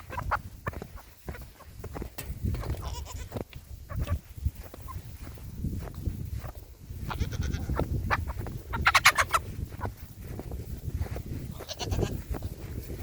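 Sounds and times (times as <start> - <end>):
goat bleating: 2.7 - 3.4, 7.0 - 7.8, 11.5 - 12.2.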